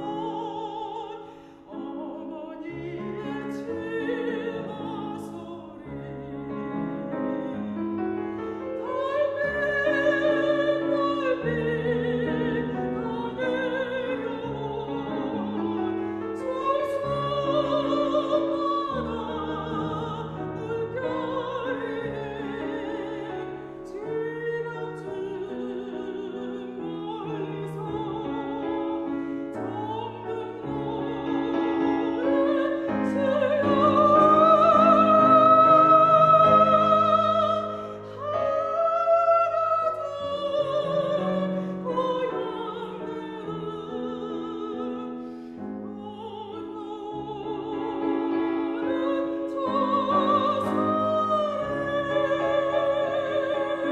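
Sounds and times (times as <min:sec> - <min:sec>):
piano accompaniment: 0:00.0 - 0:53.9
woman singing with vibrato: 0:00.0 - 0:53.9.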